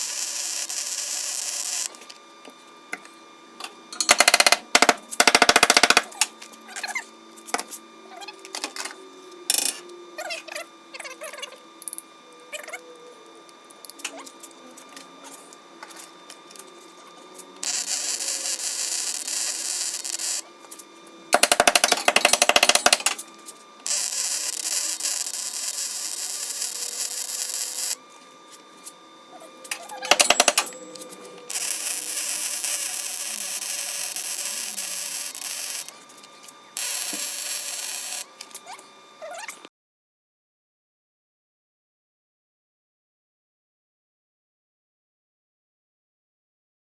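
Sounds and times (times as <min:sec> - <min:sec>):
arc welder crackling and hissing: 0:00.0 - 0:10.7, 0:13.2 - 0:39.0.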